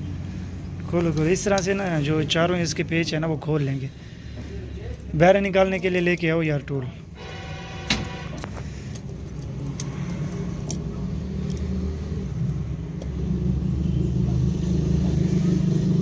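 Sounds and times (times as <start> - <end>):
vehicle engine rumble: 0.0 - 16.0
light metallic clicks: 8.4 - 11.8.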